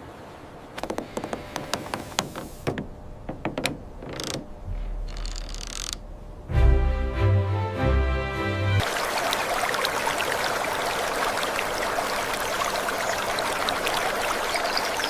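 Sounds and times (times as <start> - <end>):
trickling drips: 8.8 - 15.0
water running like a stream: 8.8 - 15.0.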